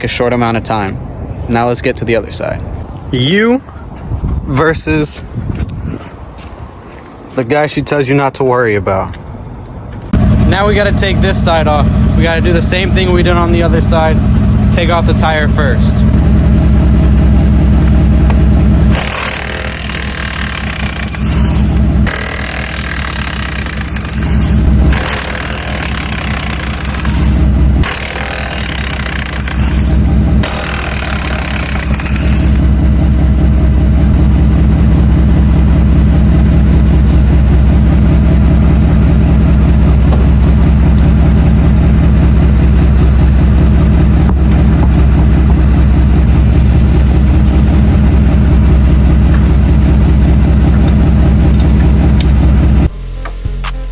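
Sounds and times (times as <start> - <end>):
truck engine idling: 10.1 - 52.9
impact wrench running: 10.2 - 52.9.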